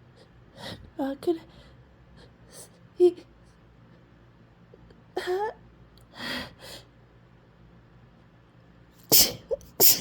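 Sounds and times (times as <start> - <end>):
loud sneeze: 9.0 - 10.0.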